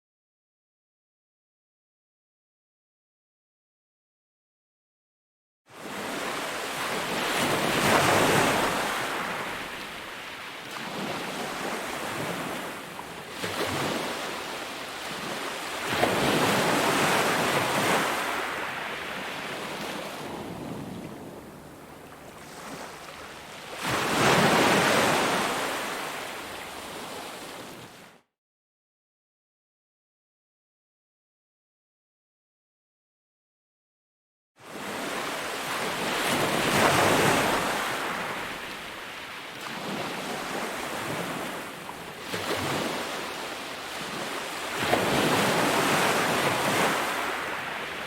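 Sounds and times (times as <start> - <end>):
ocean waves breaking: 5.8 - 28.1, 34.6 - 48.0.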